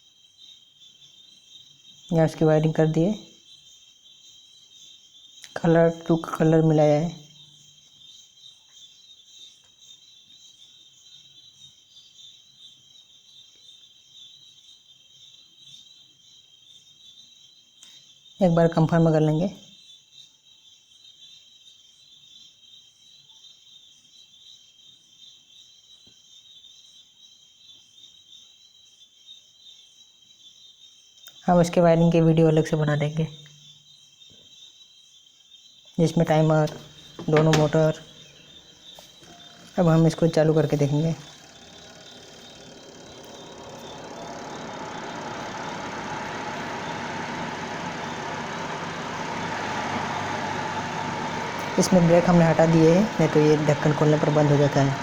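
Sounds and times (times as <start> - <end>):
insects chirring: 0.0 - 55.0
spin-dryer motor whirring: 36.6 - 55.0.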